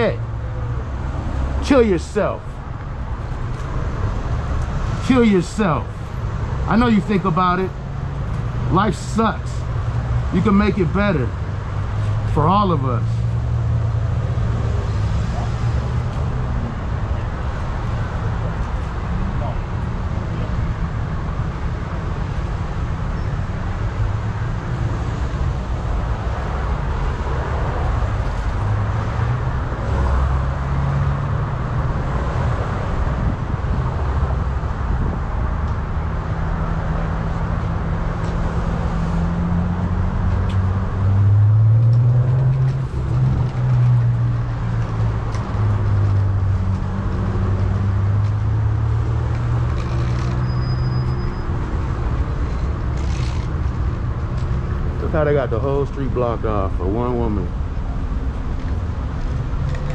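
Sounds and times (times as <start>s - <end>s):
street traffic: 0.0s - 59.9s.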